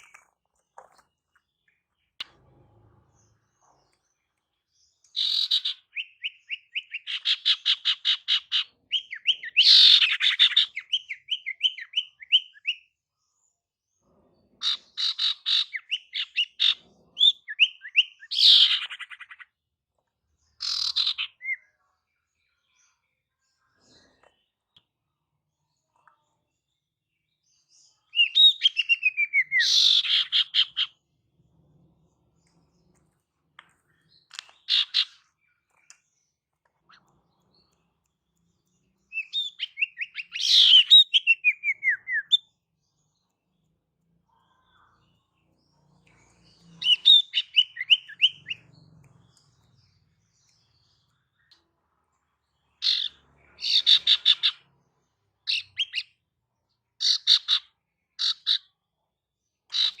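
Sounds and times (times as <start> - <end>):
bird calling with falling trills: 39.1 - 42.4, 46.7 - 48.6.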